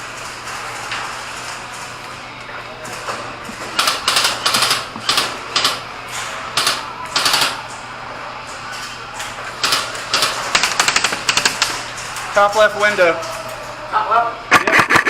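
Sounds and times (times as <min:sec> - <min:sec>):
airsoft guns firing bursts: 0:06.6 - 0:07.6, 0:09.6 - 0:11.8.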